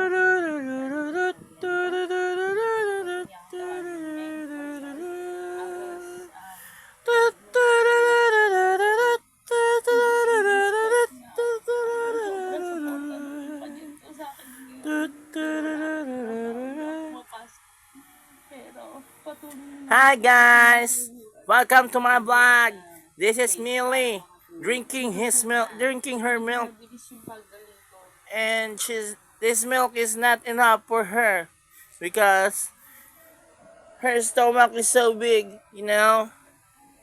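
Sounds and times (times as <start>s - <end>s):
person humming a slow tune: 0.0s - 17.4s, 19.3s - 21.2s
breaths: 6.4s - 7.0s, 14.3s - 14.8s, 31.7s - 32.0s, 32.7s - 33.9s.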